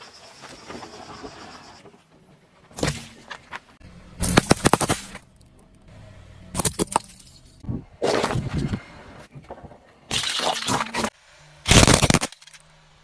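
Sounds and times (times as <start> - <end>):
objects cracking under car tyre: 4.2 - 5.6, 11.7 - 12.6.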